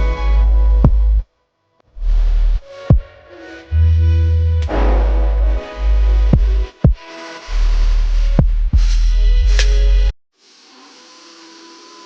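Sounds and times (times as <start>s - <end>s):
electronic music with heavy bass: 4.6s - 7.0s.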